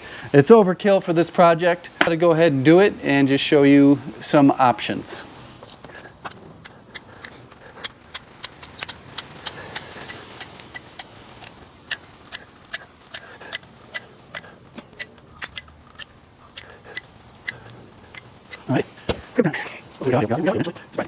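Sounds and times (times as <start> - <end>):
caulk gun clicking: 5.7 - 19.2.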